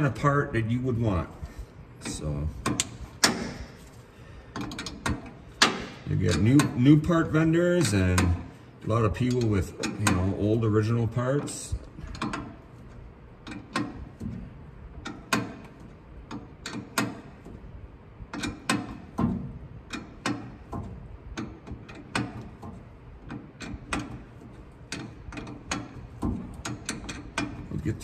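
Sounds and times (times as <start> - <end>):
hand ratchet clicking: 18.3 - 27.8
metal knocking on metal: 18.3 - 28.0.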